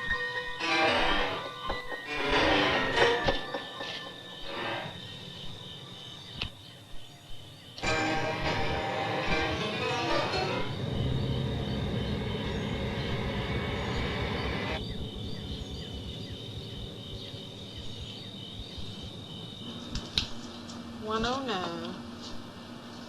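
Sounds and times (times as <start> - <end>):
insects chirping: 0.0 - 23.0
low outdoor rumble: 7.8 - 23.0.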